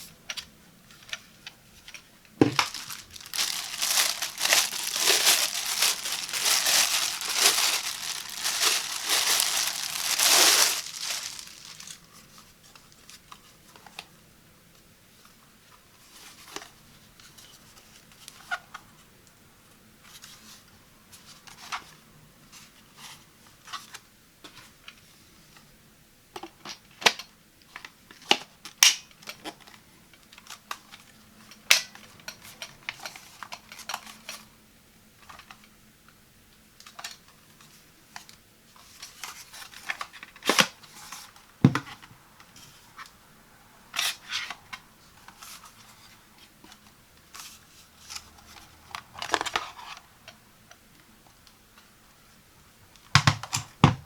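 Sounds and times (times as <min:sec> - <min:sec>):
plastic and cardboard rustling: 0:02.4 - 0:12.2.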